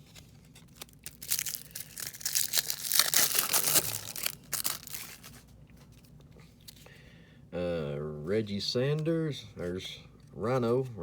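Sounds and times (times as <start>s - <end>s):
card pack wrapper tearing and crinkling: 0.6s - 5.4s.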